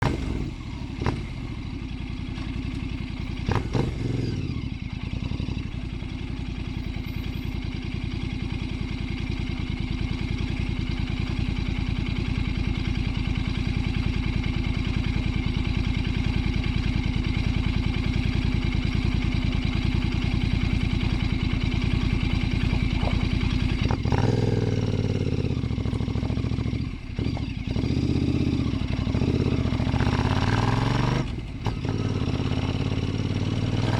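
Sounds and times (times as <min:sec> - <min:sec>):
motorcycle engine running: 0:00.0 - 0:33.9.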